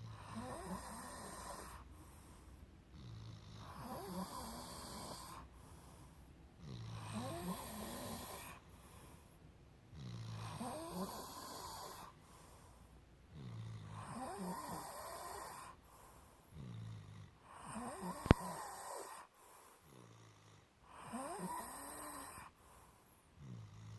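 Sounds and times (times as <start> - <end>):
whistling snores: 0.0 - 1.9, 3.0 - 5.5, 6.6 - 8.6, 10.0 - 12.2, 13.3 - 15.8, 16.6 - 19.3, 19.9 - 22.5, 23.4 - 23.9.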